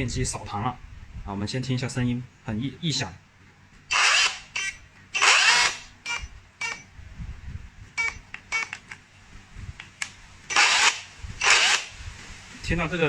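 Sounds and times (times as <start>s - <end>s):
motor scraping rubbing noise: 3.9s - 6.8s
rotary hammer motor spinning up: 3.9s - 6.8s, 8.0s - 8.8s, 10.5s - 12.0s.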